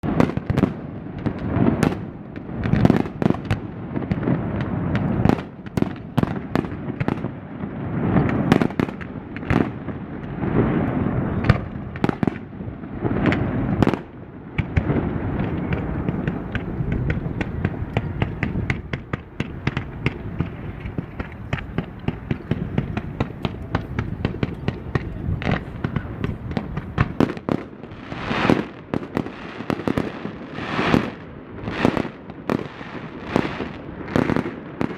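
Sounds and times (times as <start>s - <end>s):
fireworks bangs and booms: 0.0s - 34.9s
rapid sharp firework cracks: 8.0s - 34.9s.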